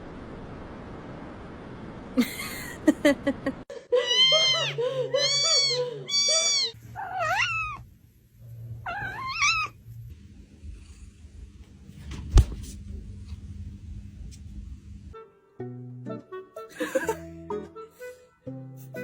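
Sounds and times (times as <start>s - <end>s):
low steady hum: 0.0s - 3.7s, 4.3s - 15.2s
cat meowing: 4.0s - 7.9s, 8.8s - 9.8s
sharp thump: 12.0s - 12.8s.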